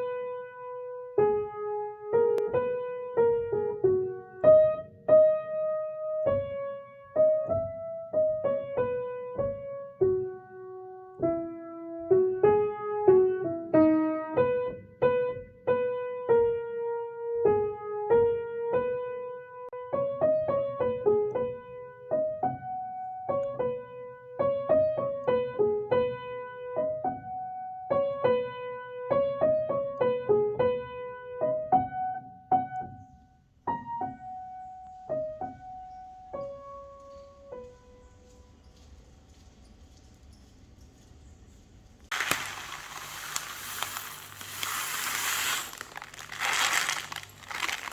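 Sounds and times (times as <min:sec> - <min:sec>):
soft piano music: 0:00.0 - 0:33.0.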